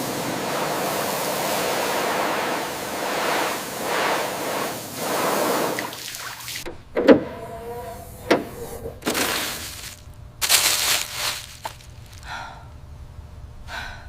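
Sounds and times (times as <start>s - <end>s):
hissing water spray: 0.0s - 6.7s.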